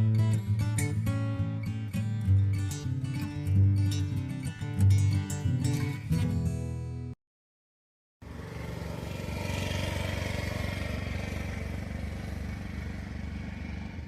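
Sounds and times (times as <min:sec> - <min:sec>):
engine running steadily: 0:08.2 - 0:14.0.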